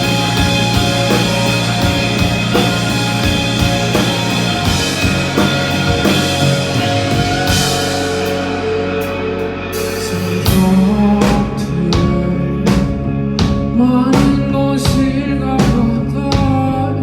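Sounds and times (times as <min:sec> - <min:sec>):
loud drum hit: 0:00.0 - 0:08.9
rock band playing live: 0:00.0 - 0:17.0.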